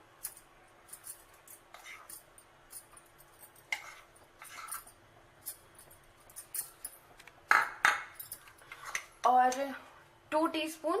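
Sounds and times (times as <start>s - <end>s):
faint steady hum: 0.0s - 11.0s
spoon scraping against bowl: 1.0s - 6.9s, 8.3s - 9.2s.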